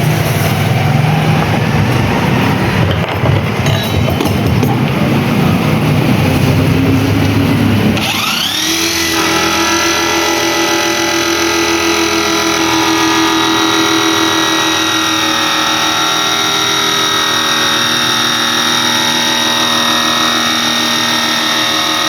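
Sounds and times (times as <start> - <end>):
high-pitched motor whine: 5.3 - 22.0.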